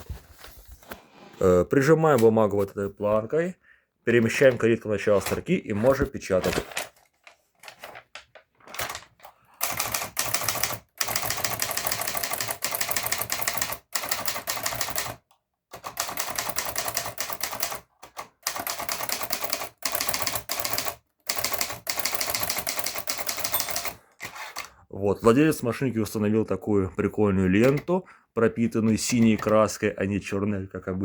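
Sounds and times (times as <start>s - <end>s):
typewriter keystrokes clacking: 8.7s - 9.0s, 9.6s - 24.0s, 27.6s - 27.9s.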